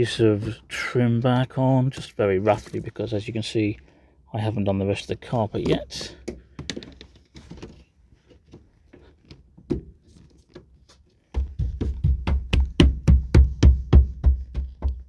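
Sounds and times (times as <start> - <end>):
fast drum beat music: 11.4 - 15.0.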